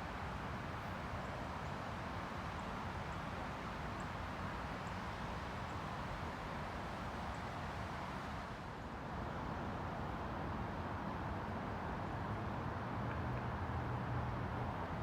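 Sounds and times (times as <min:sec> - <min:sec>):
outdoor background hiss and rumble: 0:00.0 - 0:15.0.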